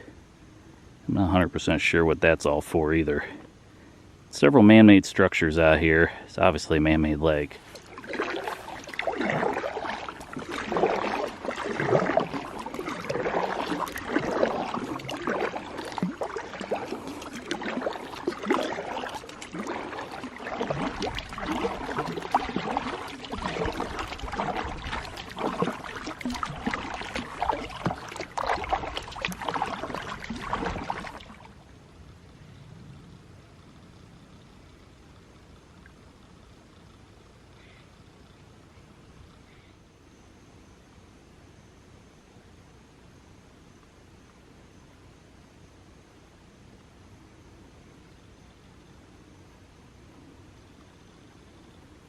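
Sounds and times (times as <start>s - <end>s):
paddle strokes splashing in water: 7.3s - 31.8s.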